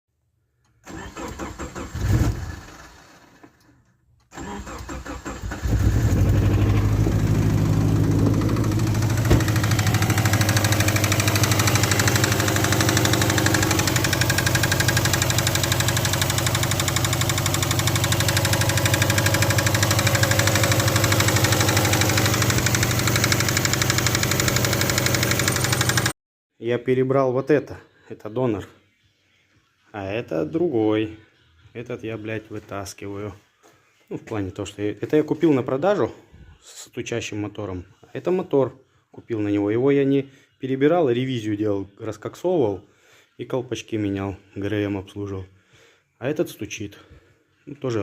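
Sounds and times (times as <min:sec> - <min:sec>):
car engine starting and idling: 0:00.8 - 0:03.6, 0:04.3 - 0:26.1
engine knocking: 0:08.6 - 0:26.1.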